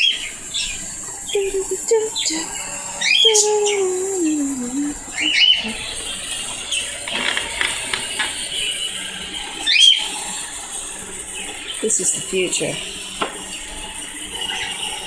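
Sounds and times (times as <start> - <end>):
robot vacuum hissing: 0.0 - 5.7
pet birds calling: 1.3 - 5.7.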